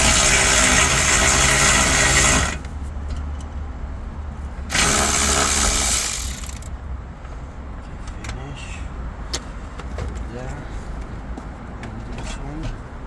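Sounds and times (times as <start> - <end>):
power tool motor running: 0.0 - 2.7, 4.7 - 6.7.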